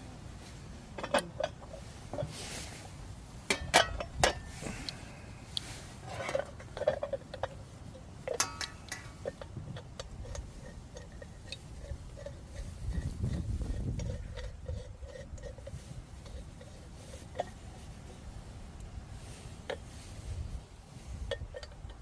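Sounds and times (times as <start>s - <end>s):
camp gear clinking and knocking: 0.0s - 2.7s, 3.4s - 18.2s.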